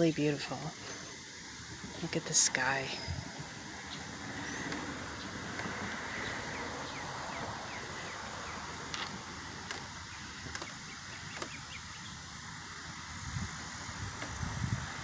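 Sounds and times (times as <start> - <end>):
road traffic hiss: 0.0 - 15.0
wind rumbling on microphone: 1.0 - 15.0.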